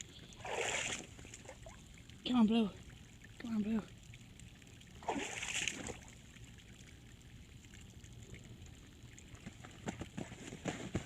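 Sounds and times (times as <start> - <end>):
water sloshing: 0.3 - 3.4, 4.8 - 6.4
puppies splashing in water: 0.4 - 1.8, 5.0 - 6.1.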